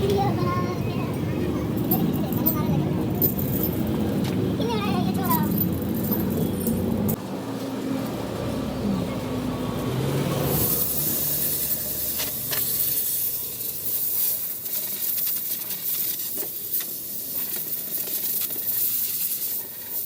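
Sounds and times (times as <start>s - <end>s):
compressed air hissing: 10.4s - 20.0s.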